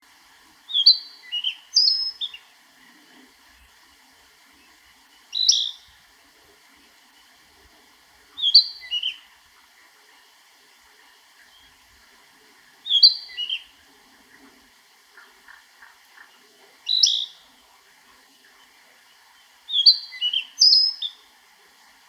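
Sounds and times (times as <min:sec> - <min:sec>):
bird singing whistled notes: 0:00.7 - 0:02.5, 0:05.3 - 0:05.9, 0:08.4 - 0:09.2, 0:12.9 - 0:13.7, 0:16.9 - 0:17.4, 0:19.7 - 0:21.2.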